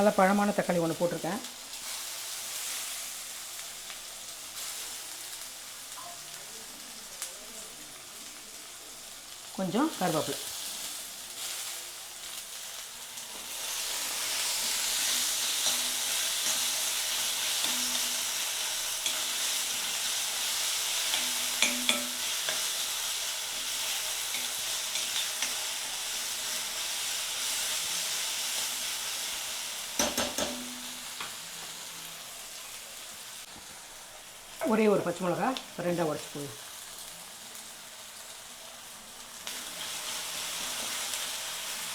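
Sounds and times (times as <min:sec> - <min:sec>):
food sizzling in oil: 0:00.0 - 0:41.9
spatula knocking against pan: 0:21.1 - 0:22.7, 0:30.0 - 0:31.0.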